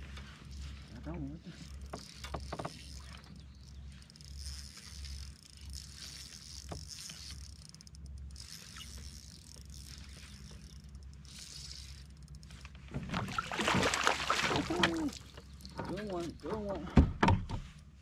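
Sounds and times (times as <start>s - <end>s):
fishing reel cranking: 1.5s - 12.8s, 14.7s - 16.5s.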